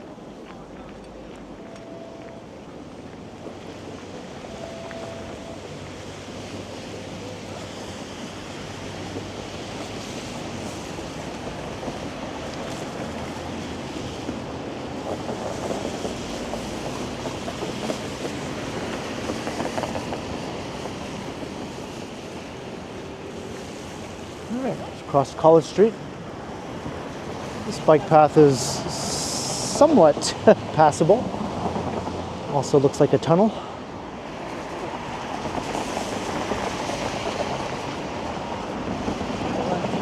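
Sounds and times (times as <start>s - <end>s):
city road traffic: 0.0s - 40.0s.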